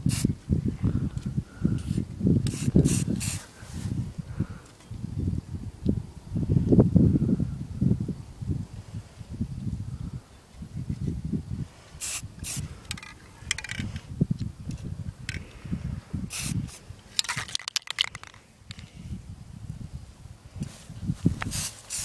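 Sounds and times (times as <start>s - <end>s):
spray paint can hissing: 0.0s - 0.3s, 1.8s - 3.5s, 12.0s - 14.0s, 16.3s - 18.3s, 21.4s - 22.0s.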